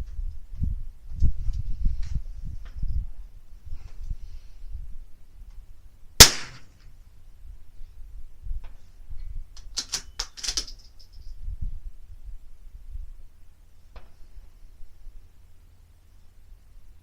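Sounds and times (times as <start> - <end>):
rifle shot: 6.2 - 6.8.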